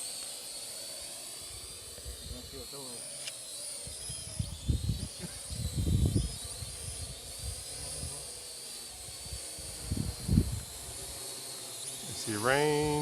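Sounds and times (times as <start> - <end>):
drone propellers whining: 0.0 - 13.0
wind buffeting microphone: 3.9 - 8.2, 9.1 - 10.8.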